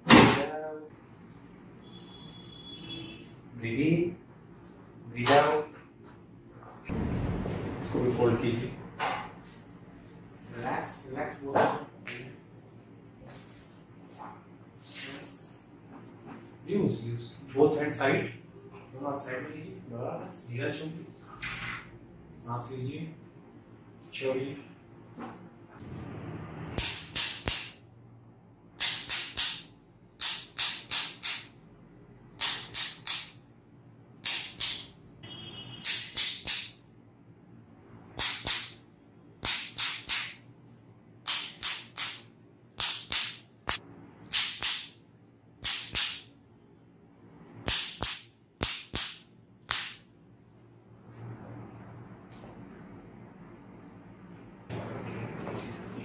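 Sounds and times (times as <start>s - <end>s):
sharp slapping strikes: 26.8s - 27.8s, 28.8s - 31.5s, 32.4s - 33.4s, 34.2s - 34.9s, 35.8s - 36.8s, 38.2s - 38.8s, 39.4s - 40.4s, 41.3s - 45.0s, 45.6s - 46.3s, 47.7s - 50.1s.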